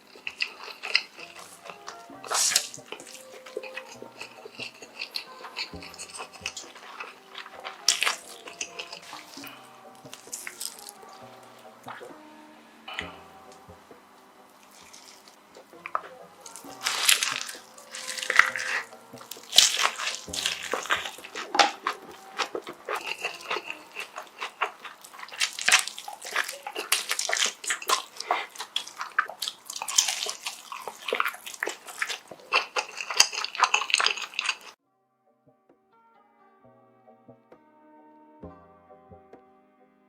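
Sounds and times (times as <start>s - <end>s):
person chewing food: 0.0s - 12.2s, 12.8s - 34.8s
faint music: 0.0s - 40.0s.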